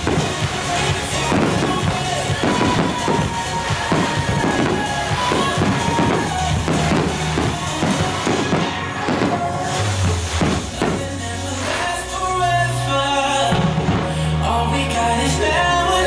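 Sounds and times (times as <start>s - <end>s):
dance-pop music: 0.0s - 16.0s.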